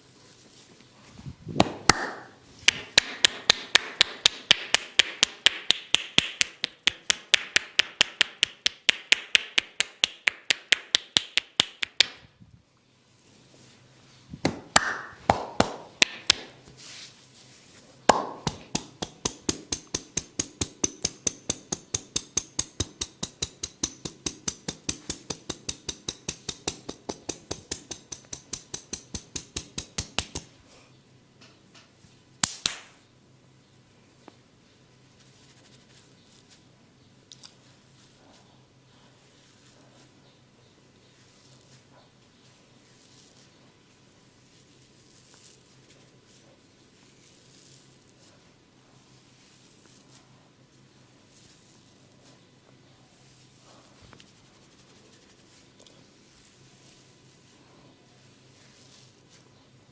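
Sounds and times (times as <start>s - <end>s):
hands clapping on a body: 1.6s - 12.2s, 14.4s - 16.6s, 18.1s - 30.5s, 32.4s - 33.0s.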